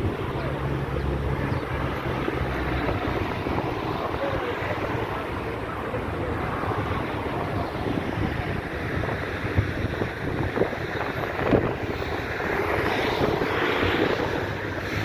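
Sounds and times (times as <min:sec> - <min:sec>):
wind buffeting microphone: 0:00.0 - 0:15.0
sea surf: 0:06.4 - 0:15.0.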